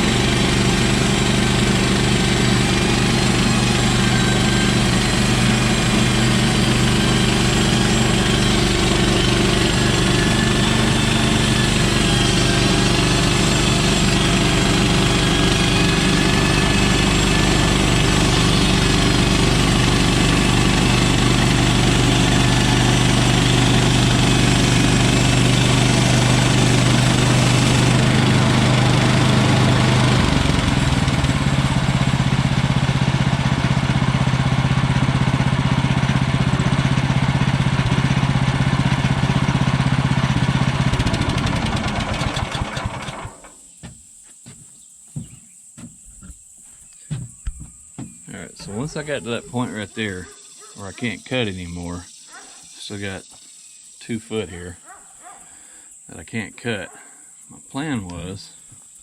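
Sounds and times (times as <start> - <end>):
gas engine running under load: 0.0 - 43.5.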